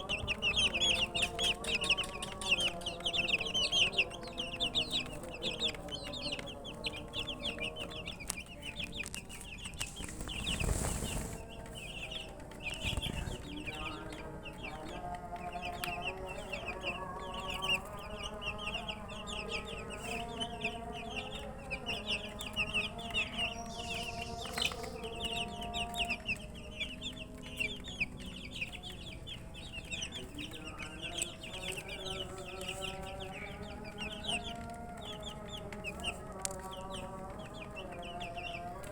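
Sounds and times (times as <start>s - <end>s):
baby chicks peeping: 0.0s - 38.9s
brief rustling: 9.7s - 11.5s.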